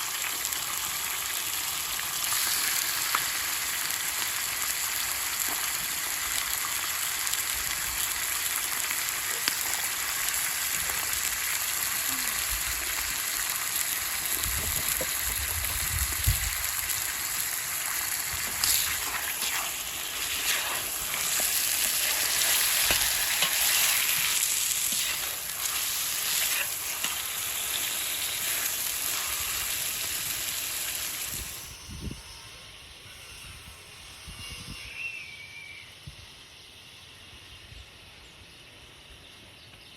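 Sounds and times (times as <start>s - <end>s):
food sizzling in oil: 0.0s - 31.9s
stirring scrapes: 18.5s - 27.2s.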